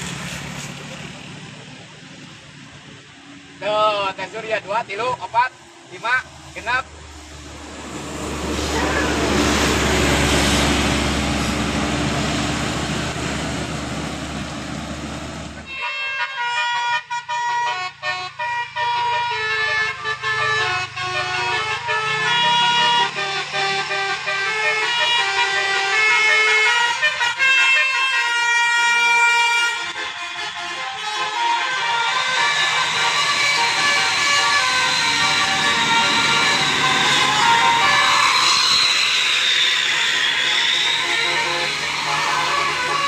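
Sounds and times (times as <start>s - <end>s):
loud rushing noise with hum: 6.9s - 15.6s, 32.4s - 43.0s
bus horn playing a tune: 15.6s - 43.0s.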